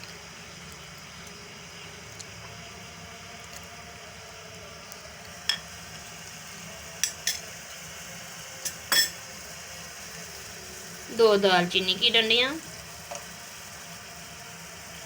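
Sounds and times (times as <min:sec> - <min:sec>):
water boiling in a pan: 0:00.0 - 0:15.0
sharp clinks against a pan: 0:07.0 - 0:07.4, 0:08.6 - 0:09.2.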